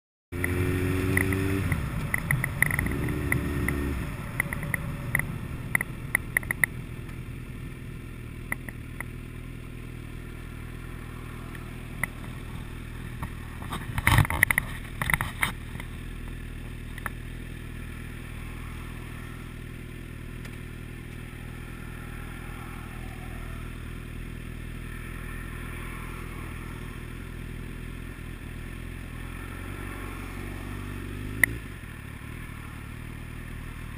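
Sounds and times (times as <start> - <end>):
vehicle engine running: 0.3 - 33.9
clicks: 0.4 - 7.2, 8.5 - 9.1.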